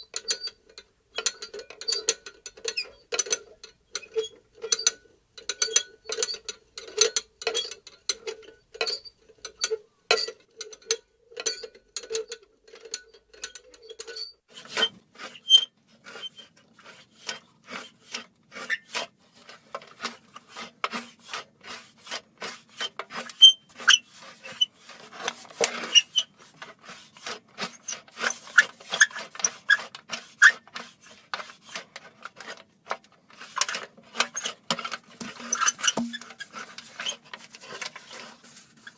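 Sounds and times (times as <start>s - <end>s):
metal lantern squeaking and rattling: 0.0s - 0.6s, 1.2s - 4.9s, 5.6s - 10.4s, 12.8s - 16.5s, 23.2s - 24.7s, 25.8s - 26.3s, 27.7s - 30.7s, 33.6s - 38.2s.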